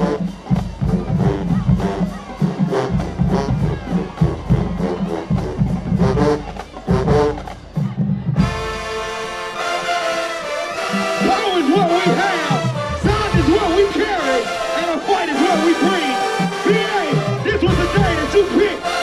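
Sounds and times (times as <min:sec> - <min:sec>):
drums beating: 0:00.0 - 0:09.8, 0:10.4 - 0:19.0
marching band playing: 0:00.0 - 0:19.0
brass chord ringing: 0:08.4 - 0:19.0.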